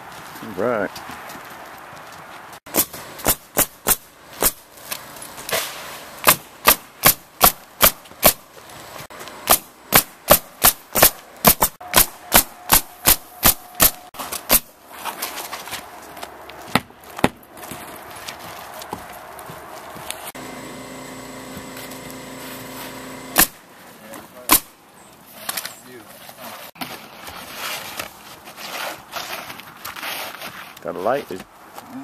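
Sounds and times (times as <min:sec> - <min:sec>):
nails driven into shingles: 0:02.7 - 0:04.7, 0:06.2 - 0:08.4, 0:09.4 - 0:14.7.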